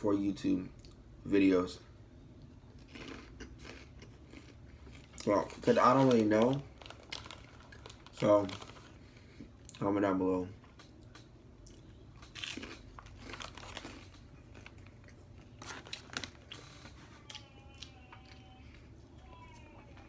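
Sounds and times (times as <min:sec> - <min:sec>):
person chewing crunchy food: 0:02.7 - 0:09.8, 0:11.0 - 0:19.6.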